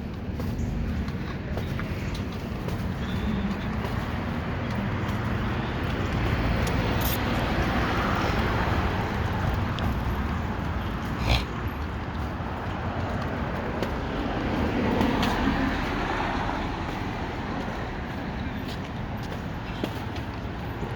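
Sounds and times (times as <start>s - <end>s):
road traffic rumble: 0.0s - 20.9s.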